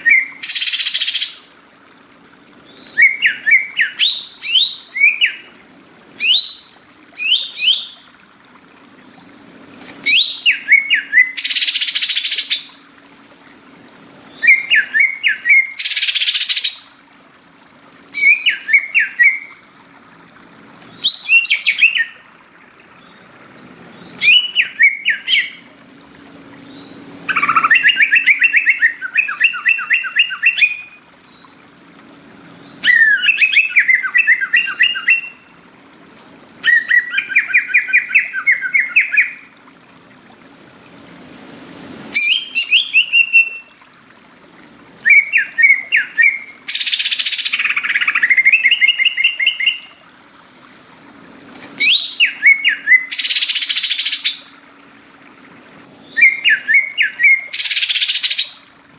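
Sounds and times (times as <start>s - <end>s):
bird singing chattering whistles: 6.2s - 8.0s, 14.3s - 17.0s, 18.2s - 19.5s, 24.2s - 25.7s, 26.8s - 31.0s, 32.8s - 35.4s, 42.2s - 43.8s, 45.0s - 49.9s, 51.8s - 54.5s, 56.0s - 58.7s.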